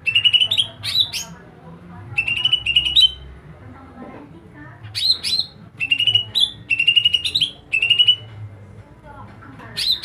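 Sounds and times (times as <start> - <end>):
songbird singing: 0.0 - 1.4, 2.2 - 3.3, 4.9 - 8.3.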